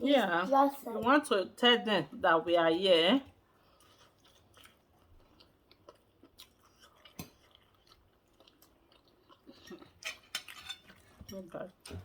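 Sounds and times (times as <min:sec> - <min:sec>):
faint chewing: 0:03.2 - 0:12.0.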